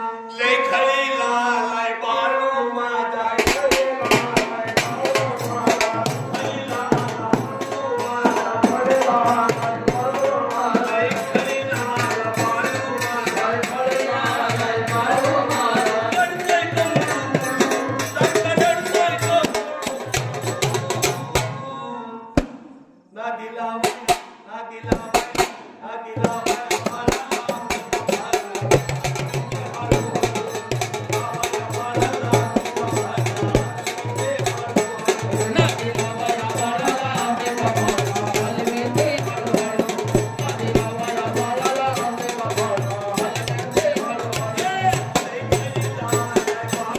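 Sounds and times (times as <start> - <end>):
old man singing: 0.0 - 46.9
hand drum beat: 26.2 - 46.9.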